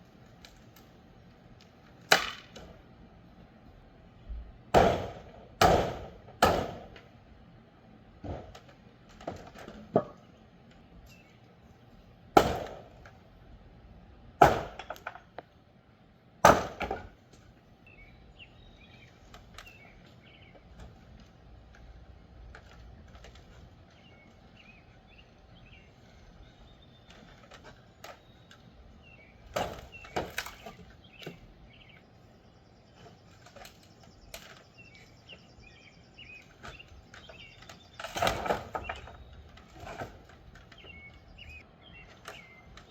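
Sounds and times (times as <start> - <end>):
heavy blows on wooden framing: 4.4 - 7.1, 14.4 - 15.2.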